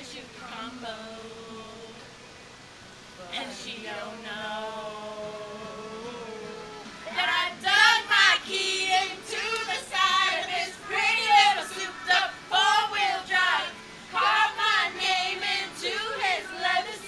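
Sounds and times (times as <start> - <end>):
girls singing: 3.2 - 17.0.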